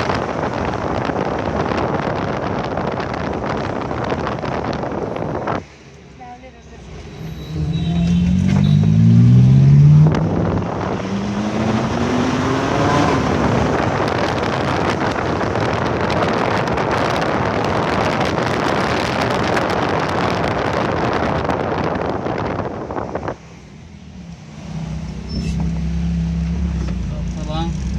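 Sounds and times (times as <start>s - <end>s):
wind and road noise: 0.0s - 27.9s
car engine accelerating hard: 6.8s - 27.9s.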